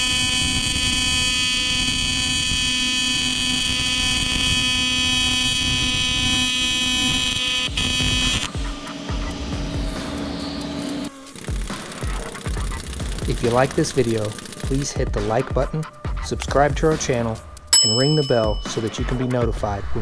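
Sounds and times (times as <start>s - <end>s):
welding arc buzzing: 10.1s - 14.8s.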